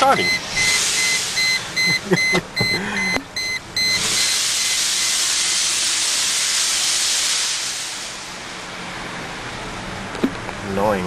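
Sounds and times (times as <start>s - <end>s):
car engine starting: 0.0s - 5.1s
loud steady exhaust hiss: 0.0s - 11.0s
short electronic chime beeps: 0.2s - 4.7s.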